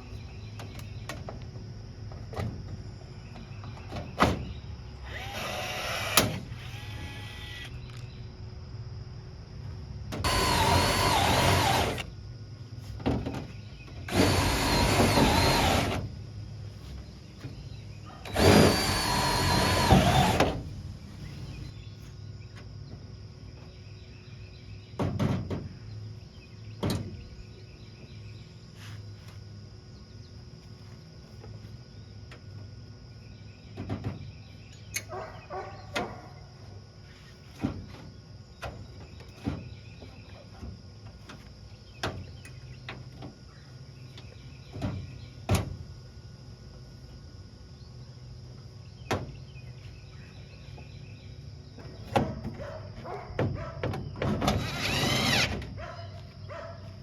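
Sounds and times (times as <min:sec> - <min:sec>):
power drill motor whining: 0:05.0 - 0:07.8, 0:10.2 - 0:12.1, 0:14.1 - 0:16.0, 0:18.3 - 0:20.6, 0:54.5 - 0:55.5.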